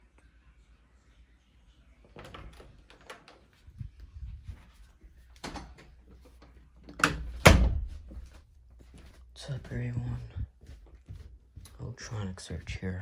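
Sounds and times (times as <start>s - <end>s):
knocks and clatters: 6.9s - 8.4s.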